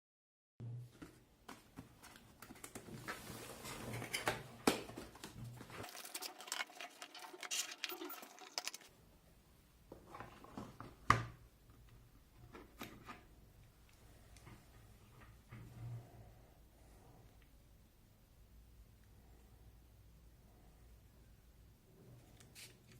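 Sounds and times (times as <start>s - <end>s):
packaging rustling: 4.7s - 8.9s.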